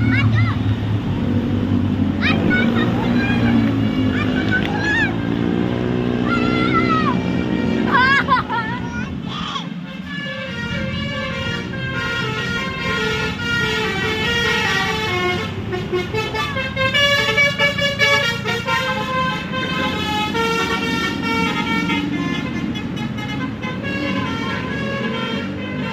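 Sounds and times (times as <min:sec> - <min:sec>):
bus engine rumble: 0:00.0 - 0:25.9
musical bus horn playing tune: 0:06.2 - 0:08.6, 0:09.8 - 0:25.9.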